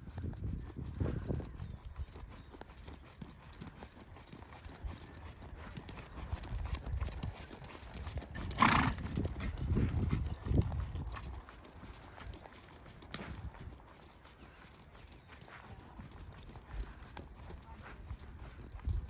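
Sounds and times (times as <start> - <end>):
horse hoofbeats: 0.0 - 19.0.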